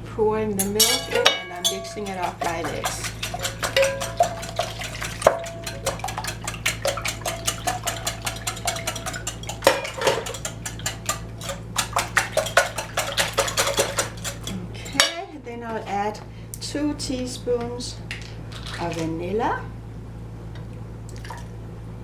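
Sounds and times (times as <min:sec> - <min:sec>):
utensil beating eggs in a bowl: 0:00.6 - 0:15.2.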